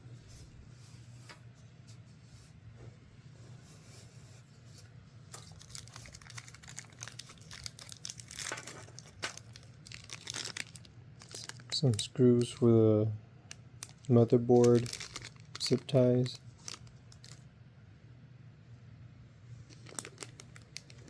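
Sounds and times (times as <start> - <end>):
faint low hum: 0.0 - 21.0
plastic packaging crinkling: 5.3 - 12.7, 13.5 - 17.5, 19.6 - 21.0.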